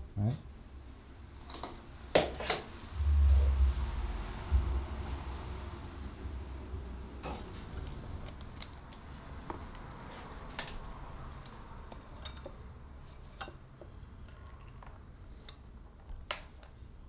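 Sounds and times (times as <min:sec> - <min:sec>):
low hum: 0:02.9 - 0:07.2.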